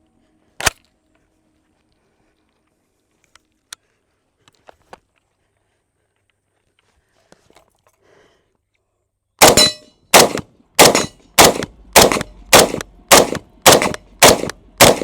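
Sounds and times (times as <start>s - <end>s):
rifle shots: 9.4s - 15.0s.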